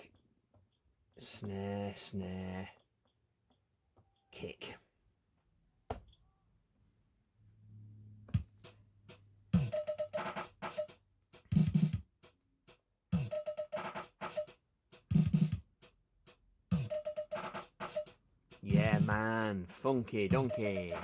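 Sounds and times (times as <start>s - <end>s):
drum machine looped beat: 8.4s - 21.0s.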